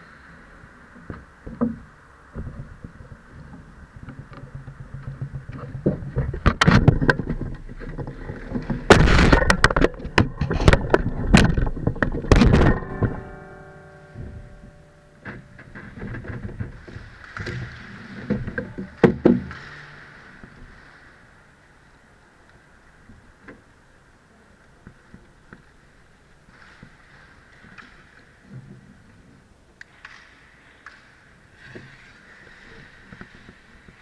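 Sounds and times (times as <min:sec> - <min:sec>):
ringing tone: 0:12.3 - 0:16.3.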